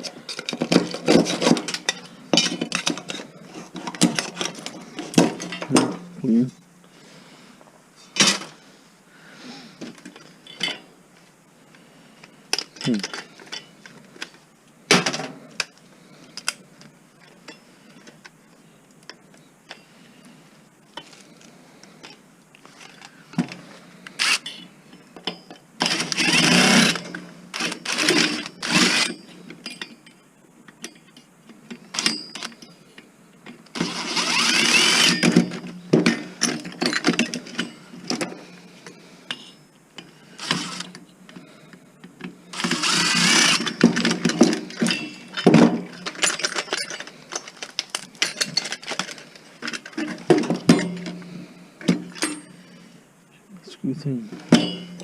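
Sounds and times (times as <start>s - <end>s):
clatter of screws and parts: 0.0s - 6.0s, 12.5s - 14.4s, 21.0s - 52.7s, 54.4s - 55.0s
cordless drill running: 24.2s - 24.4s, 25.9s - 27.0s, 27.6s - 29.2s, 33.8s - 35.2s, 40.4s - 40.9s, 42.5s - 43.8s.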